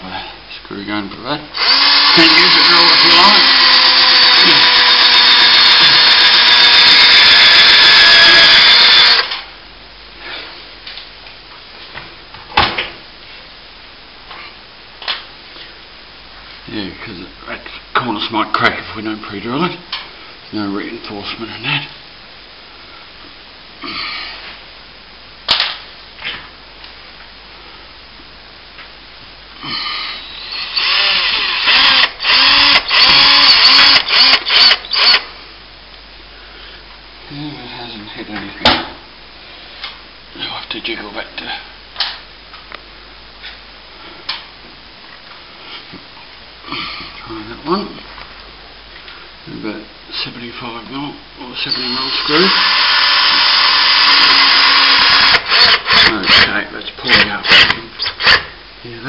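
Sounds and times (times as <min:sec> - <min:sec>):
screw gun whining: 0:01.6 - 0:09.4, 0:30.2 - 0:35.3, 0:51.6 - 0:58.5.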